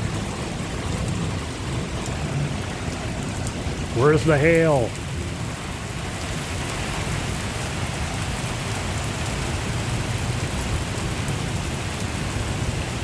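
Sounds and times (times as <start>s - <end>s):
heavy rain: 0.0s - 13.0s
wind rumbling on microphone: 4.9s - 13.0s.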